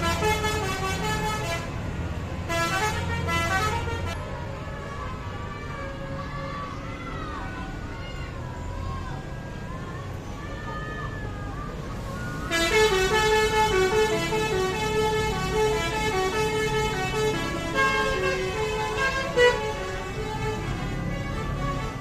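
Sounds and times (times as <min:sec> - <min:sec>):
bus musical horn tune: 0:00.0 - 0:04.3, 0:12.5 - 0:22.0
bus engine rumble: 0:00.0 - 0:22.0.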